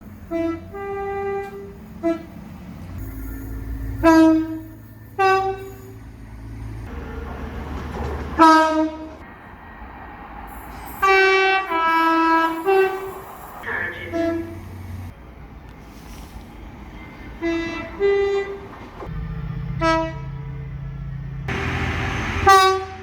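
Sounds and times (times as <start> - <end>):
train horn blasts: 0.0 - 6.2, 8.4 - 9.2, 11.0 - 15.1, 17.0 - 23.0
train rumble: 0.0 - 23.0.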